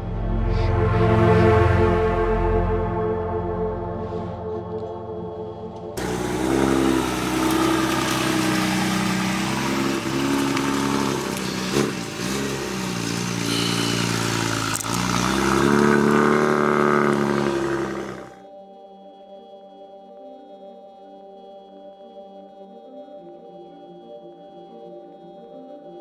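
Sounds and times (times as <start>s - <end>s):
car engine accelerating hard: 6.0s - 18.4s.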